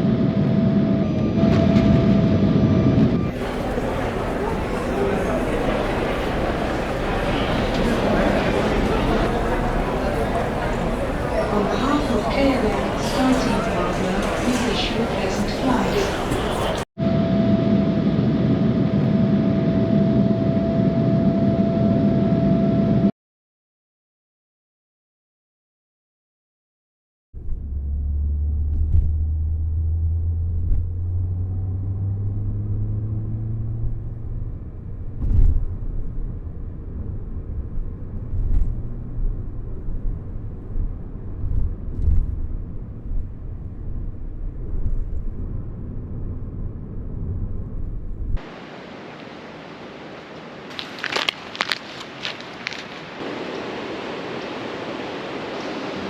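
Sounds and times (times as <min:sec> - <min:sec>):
steady low rumble: 0:03.0 - 0:16.8, 0:27.4 - 0:48.6
crackling clicks: 0:50.7 - 0:53.1.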